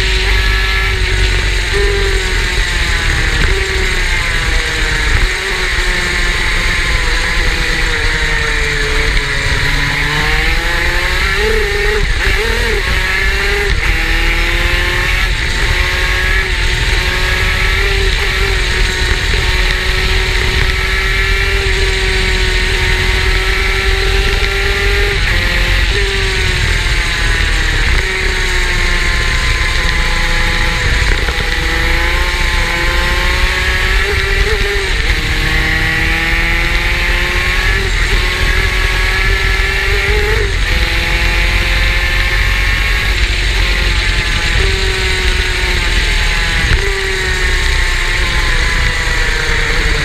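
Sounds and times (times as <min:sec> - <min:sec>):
two-stroke kart engine at high revs: 0:00.0 - 0:50.0.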